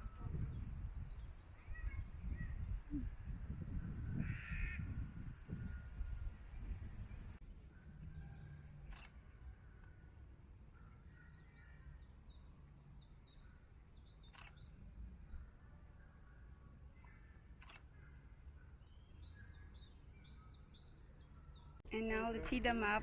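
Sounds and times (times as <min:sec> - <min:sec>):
small birds chirping: 0:00.0 - 0:04.9, 0:07.7 - 0:23.0
low wind rumble: 0:00.0 - 0:10.6
sharp clicks: 0:17.6 - 0:17.8.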